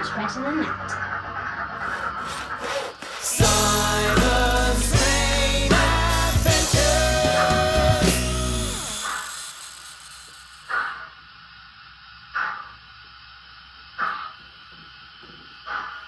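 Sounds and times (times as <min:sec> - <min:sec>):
steam locomotive chuffs: 0:01.6 - 0:11.0.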